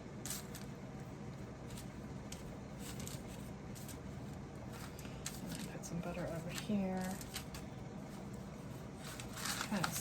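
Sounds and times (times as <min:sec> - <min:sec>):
low room hum: 0:00.0 - 0:10.0
crisp paper rustles: 0:04.7 - 0:10.0.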